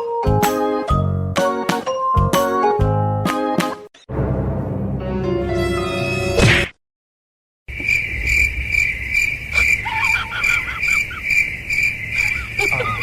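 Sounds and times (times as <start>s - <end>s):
music: 0.0s - 6.6s
cricket chirping: 7.7s - 13.0s.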